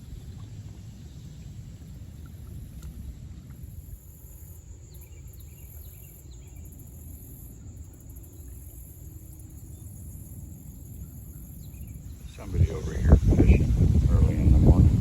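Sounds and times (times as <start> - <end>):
low wind rumble: 9.4 - 15.0.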